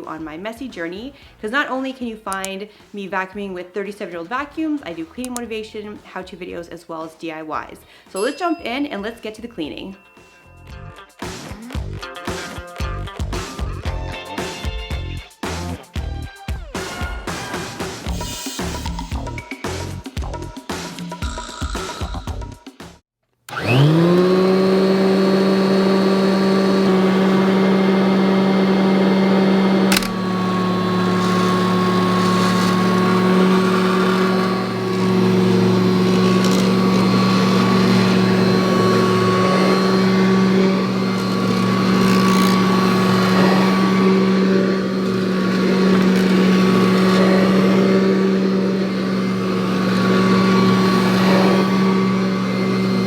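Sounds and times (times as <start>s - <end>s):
vacuum cleaner motor whine: 23.5s - 53.0s.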